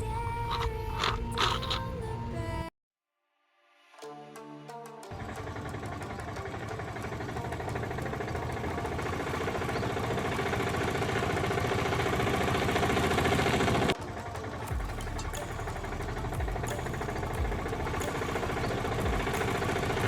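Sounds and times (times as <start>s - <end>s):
engine idling: 5.1s - 20.0s.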